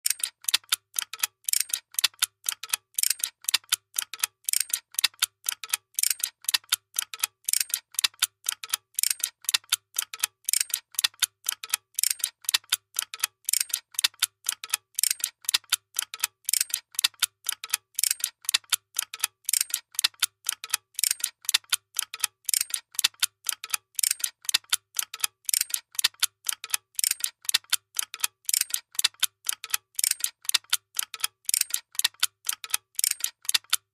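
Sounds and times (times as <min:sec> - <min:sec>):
machine fast mechanical clicking: 0:19.2 - 0:33.8.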